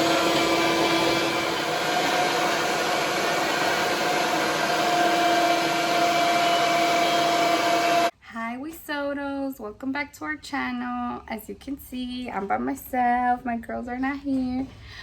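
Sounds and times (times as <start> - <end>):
small electric motor whirring: 0.0 - 8.1.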